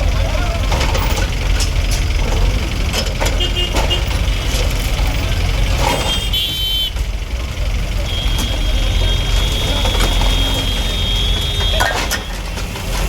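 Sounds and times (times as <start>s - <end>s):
heavy diesel machinery rumbling: 0.0s - 13.0s
knocks and clatter: 0.0s - 13.0s
street noise: 0.0s - 13.0s.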